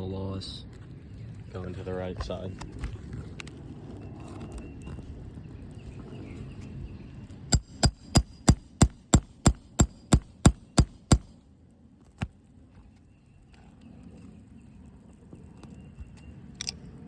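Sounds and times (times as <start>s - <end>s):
hammer striking nail puller: 7.5s - 11.3s.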